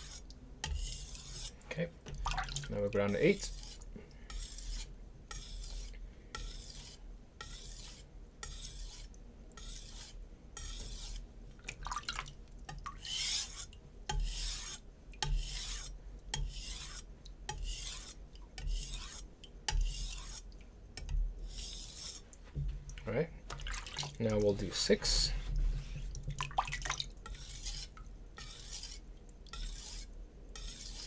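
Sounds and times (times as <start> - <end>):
knife scraping on whetstone: 0.0 - 1.6, 3.1 - 11.3, 13.0 - 20.5, 21.4 - 22.2, 27.2 - 31.0.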